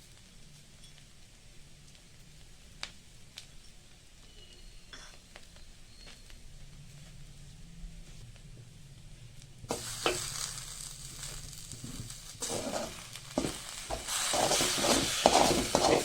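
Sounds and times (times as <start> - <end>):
food sizzling in hot oil: 9.7 - 16.0
spatula stirring and scraping: 9.7 - 16.0.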